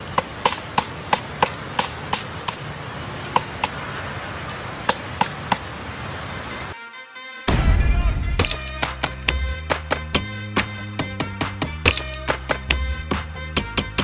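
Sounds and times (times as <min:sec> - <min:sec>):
woodpecker pecking at wood: 0:08.4 - 0:14.0.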